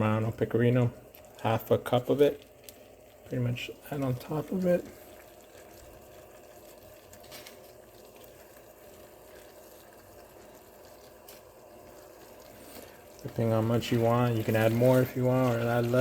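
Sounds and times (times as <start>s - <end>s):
sauce simmering in a pan: 0.0s - 16.0s.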